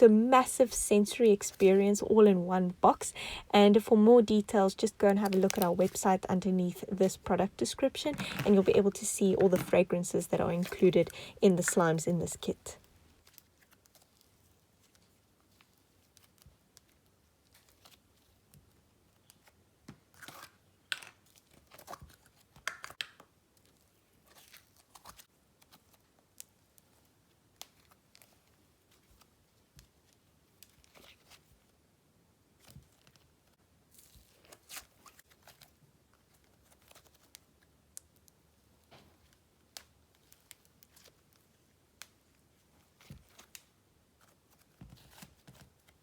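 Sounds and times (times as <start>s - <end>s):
clay slime crackling and tearing: 19.2s - 31.5s, 33.9s - 38.4s.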